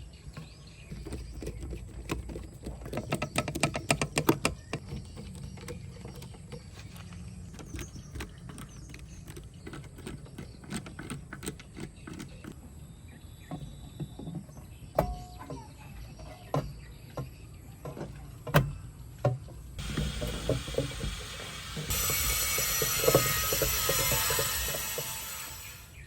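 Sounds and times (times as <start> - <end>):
tools and parts clicking: 0.4 - 12.6.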